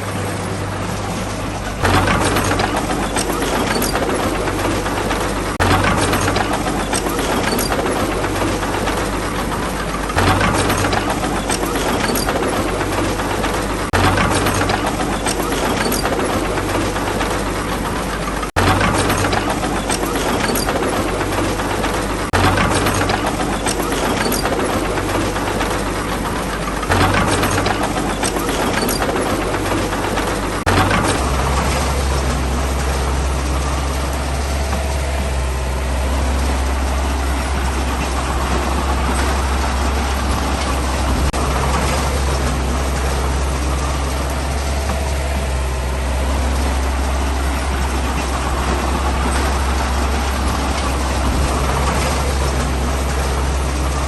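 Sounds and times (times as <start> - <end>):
heavy diesel engine running: 0.0 - 54.0
sharp knocks: 1.8 - 17.6, 26.8 - 33.0.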